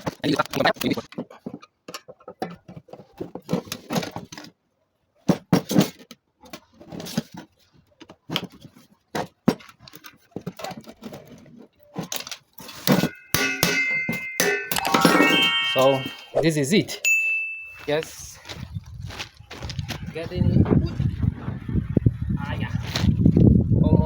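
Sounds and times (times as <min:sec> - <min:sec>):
chime: 0:12.8 - 0:18.1.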